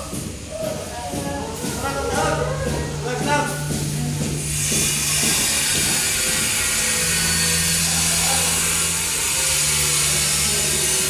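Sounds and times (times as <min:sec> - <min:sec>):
power tool whirring: 0:03.9 - 0:11.0.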